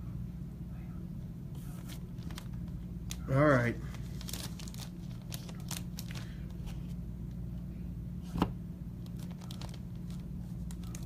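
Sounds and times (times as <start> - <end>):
steady low hum: 0.0 - 11.0
wrappers and cardboard crinkling: 1.6 - 7.0, 9.0 - 11.0.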